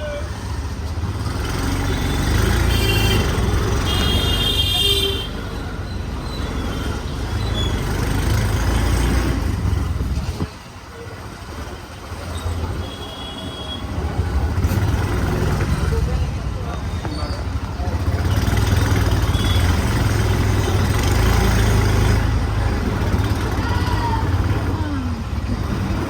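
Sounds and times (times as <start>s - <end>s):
street traffic engines: 0.0s - 26.0s
vehicle horns tooting: 2.0s - 5.6s, 12.7s - 14.1s, 19.1s - 20.2s.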